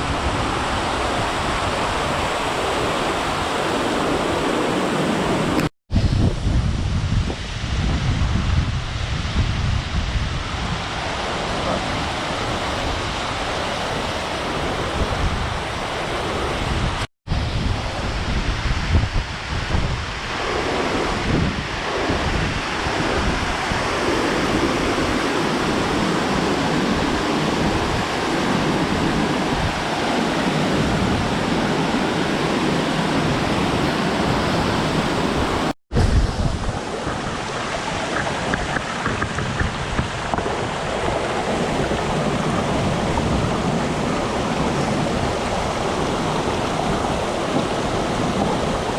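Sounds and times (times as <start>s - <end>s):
waterfall roaring: 0.0s - 5.7s, 10.5s - 48.9s
wind buffeting microphone: 0.0s - 48.9s.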